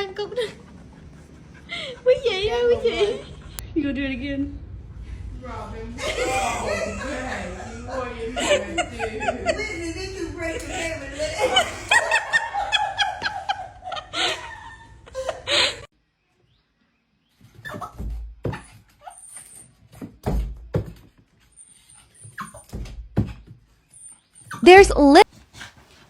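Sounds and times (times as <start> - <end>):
dog whining and yelping: 17.5 - 19.7, 21.5 - 22.8, 23.8 - 24.7
thuds and knocks: 17.8 - 18.8, 19.9 - 21.2, 22.7 - 23.6.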